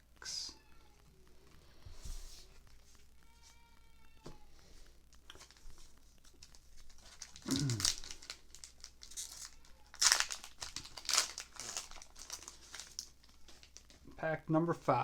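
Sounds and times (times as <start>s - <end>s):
foil wrapper crinkling and tearing: 5.2s - 14.0s.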